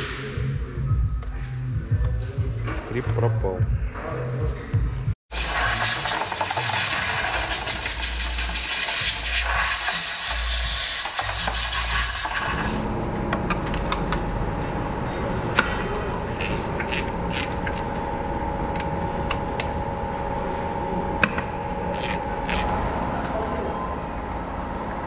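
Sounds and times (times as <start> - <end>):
loud steady hiss: 5.3 - 12.9
steady hum: 12.7 - 23.2.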